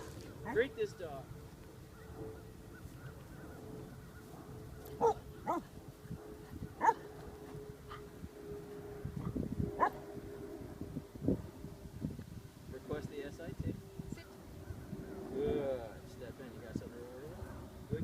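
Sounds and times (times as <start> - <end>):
dog barking in high yips: 5.0 - 5.6, 6.8 - 7.0.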